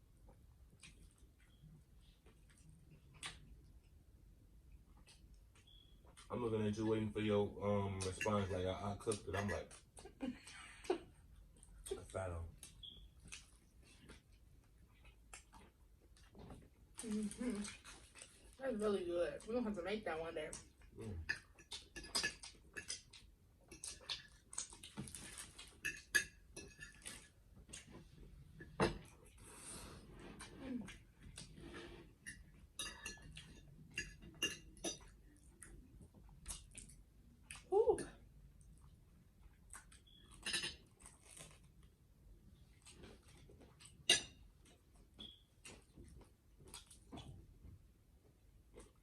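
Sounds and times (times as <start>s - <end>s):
wet mouth clicks and chewing: 0.6s - 1.6s, 2.3s - 4.0s, 12.6s - 18.6s, 20.5s - 26.1s, 35.0s - 37.7s, 38.6s - 41.9s, 44.7s - 47.4s
cutlery clinking on a plate: 21.2s - 23.0s, 25.8s - 27.3s, 32.2s - 35.2s, 40.2s - 40.9s, 44.0s - 44.4s
crunchy chewing: 39.5s - 41.9s.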